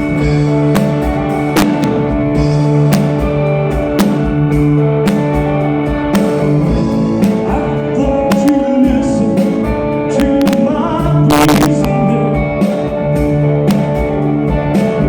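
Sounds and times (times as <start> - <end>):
drums: 0.0 - 15.0
electric guitar: 0.0 - 15.0.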